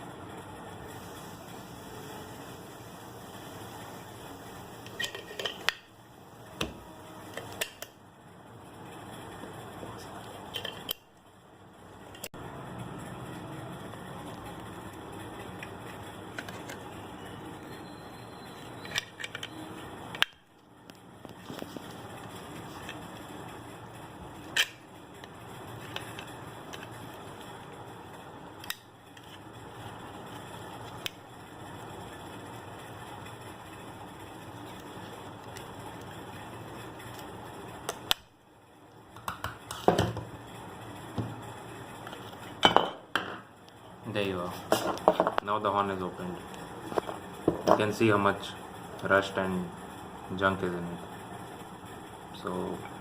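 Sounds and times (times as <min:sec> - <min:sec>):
steady background hiss: 0:00.0 - 0:11.8
steady background noise: 0:00.0 - 0:53.0.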